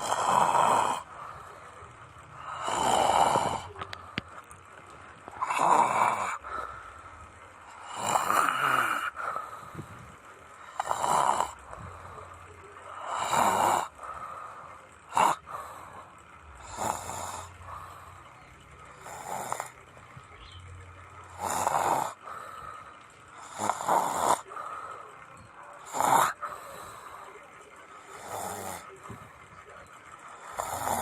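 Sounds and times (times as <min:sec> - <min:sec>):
person snoring: 0:00.0 - 0:01.6, 0:02.4 - 0:04.3, 0:05.3 - 0:06.8, 0:07.7 - 0:09.9, 0:10.6 - 0:12.3, 0:12.9 - 0:14.5, 0:15.1 - 0:18.2, 0:18.9 - 0:19.8, 0:21.3 - 0:22.5, 0:23.4 - 0:24.8, 0:25.8 - 0:27.3, 0:28.1 - 0:29.1, 0:30.4 - 0:31.0.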